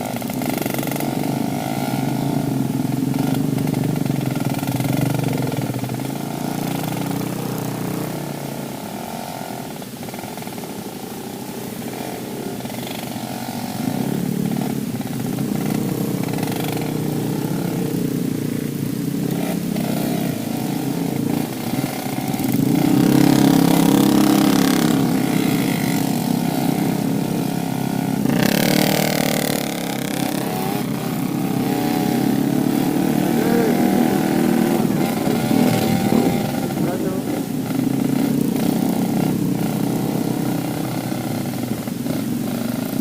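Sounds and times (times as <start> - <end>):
two-stroke motorcycle engine running: 0.0 - 43.0
rushing hiss: 0.2 - 42.9.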